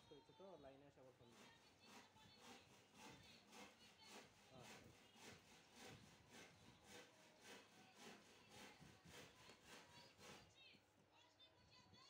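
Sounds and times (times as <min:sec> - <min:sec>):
rhythmic rubbing or scraping: 0:01.4 - 0:10.5.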